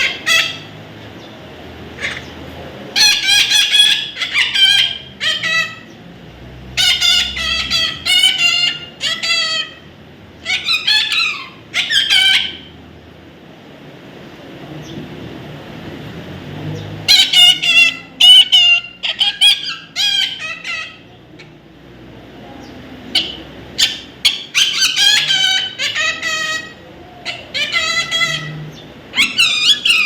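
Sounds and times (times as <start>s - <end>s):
bird calling harshly: 0.0s - 0.8s, 1.9s - 6.0s, 6.8s - 12.8s, 17.1s - 21.6s, 23.0s - 30.0s.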